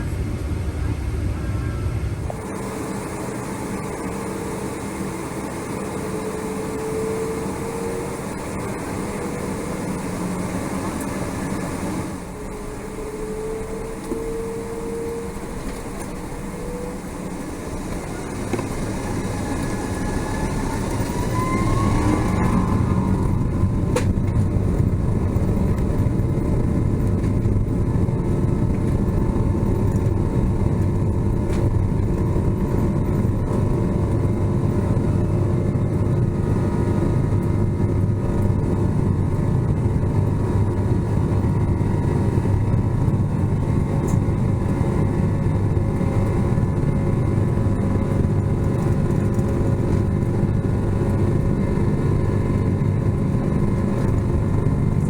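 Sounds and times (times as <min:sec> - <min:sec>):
airplane cabin engine drone: 0:00.0 - 0:55.0.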